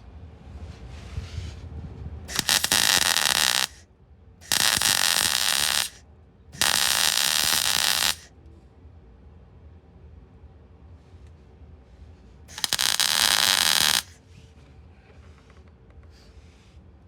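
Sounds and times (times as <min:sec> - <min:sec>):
welder arc buzzing: 0:02.3 - 0:03.8, 0:04.4 - 0:06.0, 0:06.6 - 0:08.3, 0:12.5 - 0:14.2.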